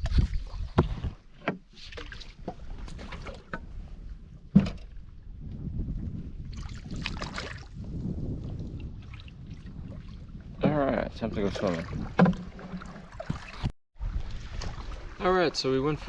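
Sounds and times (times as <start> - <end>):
knocks in a boat: 4.5 - 5.0, 11.6 - 13.5
rush of water: 8.5 - 16.0.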